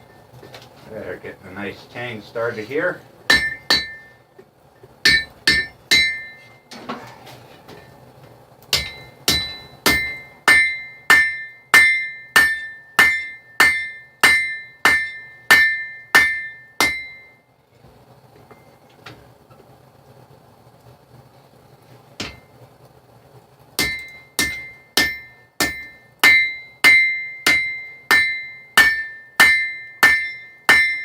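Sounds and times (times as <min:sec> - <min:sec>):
hammer ringing on anvil: 0:03.3 - 0:04.1, 0:05.1 - 0:06.6, 0:08.8 - 0:17.4, 0:23.8 - 0:31.0.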